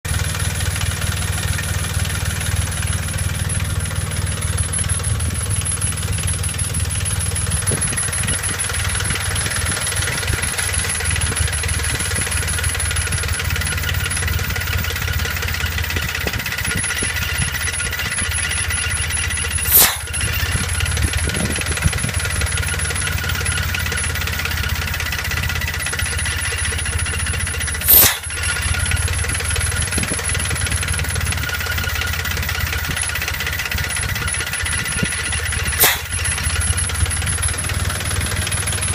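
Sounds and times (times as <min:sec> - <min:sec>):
engine idling: 0:00.0 - 0:38.9
sharp bang: 0:19.6 - 0:20.3, 0:27.8 - 0:28.5, 0:35.7 - 0:36.5.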